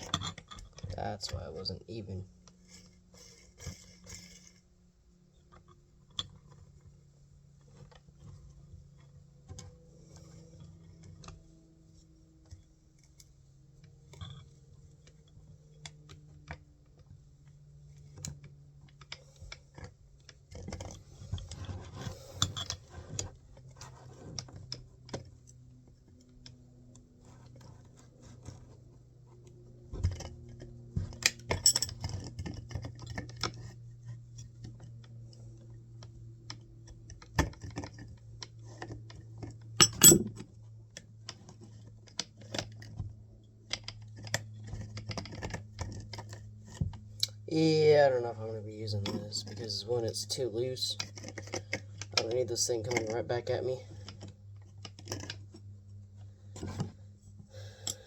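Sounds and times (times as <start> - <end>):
steady low hum: 0.0 - 58.0
tools clicking and rattling: 30.1 - 33.6, 38.8 - 40.5.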